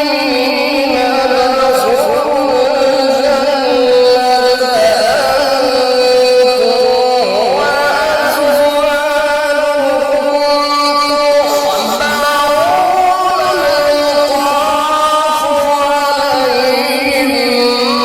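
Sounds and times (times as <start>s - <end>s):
person reciting melodically: 0.0s - 18.0s.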